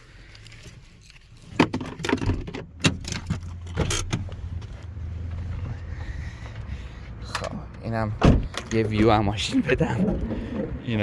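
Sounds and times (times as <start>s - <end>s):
low vehicle hum: 0.0s - 11.0s
sharp handling clicks and knocks: 0.3s - 4.7s, 7.2s - 9.1s.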